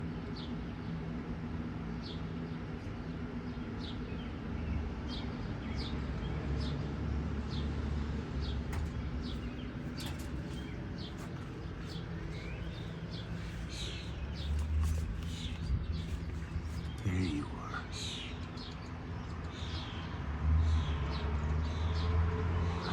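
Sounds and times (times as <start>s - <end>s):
steady low rumble: 8.4s - 18.8s
bird chirping: 8.4s - 20.1s.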